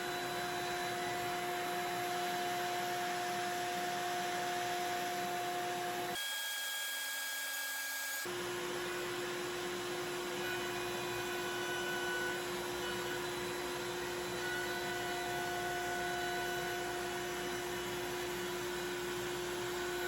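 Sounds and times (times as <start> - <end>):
machine humming steadily: 8.3 - 20.0.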